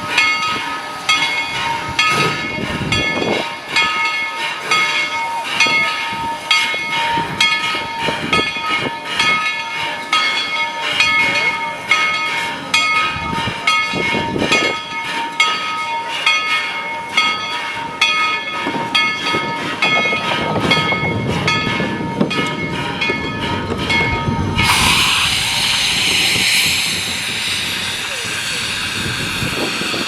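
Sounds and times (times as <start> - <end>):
train clicking over rail joints: 0.0 - 30.0
steady high tone: 23.0 - 30.0
loud steam hiss: 24.2 - 30.0.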